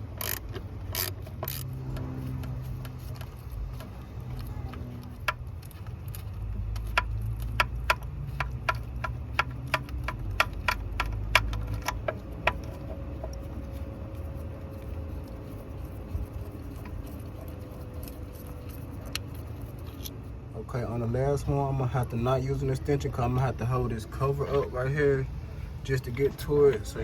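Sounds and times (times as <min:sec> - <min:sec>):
hand ratchet clicking: 0:00.0 - 0:13.4.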